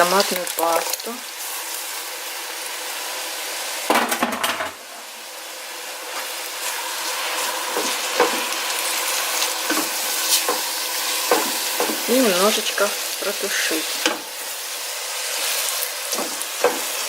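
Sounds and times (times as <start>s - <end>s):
vegetables sizzling in oil: 0.0s - 17.0s.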